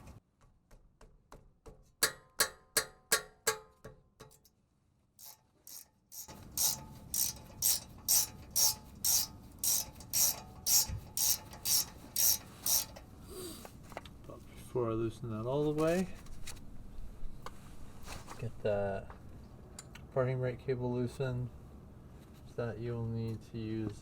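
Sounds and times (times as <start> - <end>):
ratchet wrench clicking: 5.2 - 13.1.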